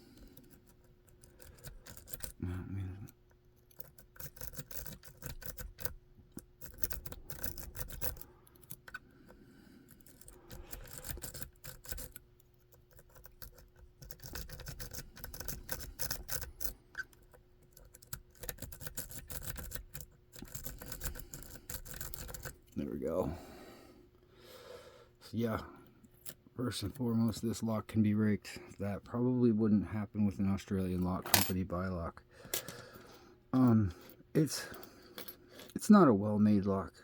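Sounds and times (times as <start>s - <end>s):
lock pick clicking and scratching: 0.1s - 2.4s, 3.0s - 22.8s, 31.2s - 31.6s.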